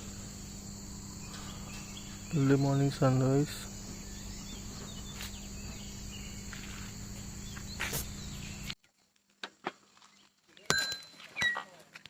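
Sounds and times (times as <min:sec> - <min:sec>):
insect chorus trilling: 0:00.0 - 0:08.8
outdoor hiss: 0:00.0 - 0:08.8.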